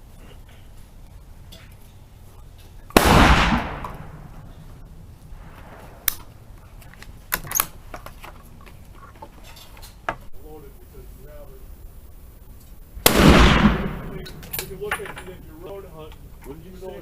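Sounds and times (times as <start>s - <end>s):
rifle shot: 3.0s - 4.6s, 13.0s - 14.6s.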